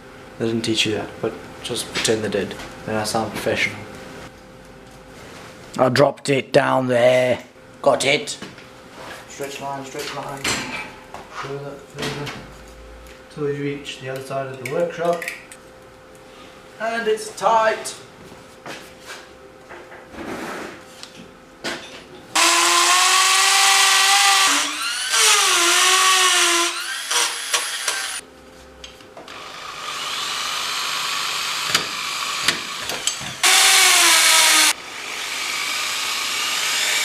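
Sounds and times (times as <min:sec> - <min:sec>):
power drill motor whine: 0:22.4 - 0:28.2, 0:29.3 - 0:37.0.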